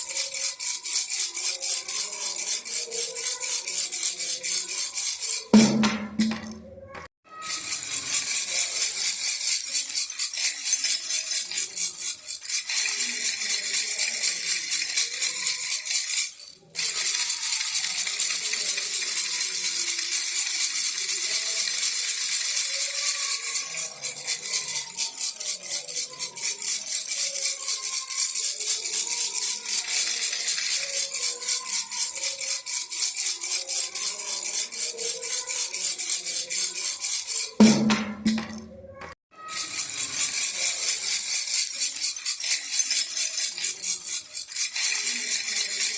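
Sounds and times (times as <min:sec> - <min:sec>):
baby rattle shaken: 0:00.0 - 0:45.9.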